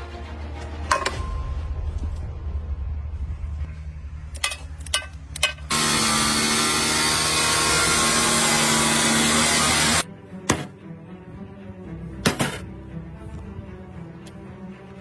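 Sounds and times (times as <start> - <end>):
low rumble: 0.0 - 5.4
power tool whining: 5.7 - 10.0.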